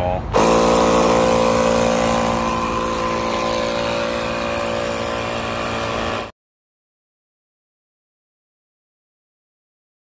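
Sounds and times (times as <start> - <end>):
air compressor running: 0.3 - 6.3.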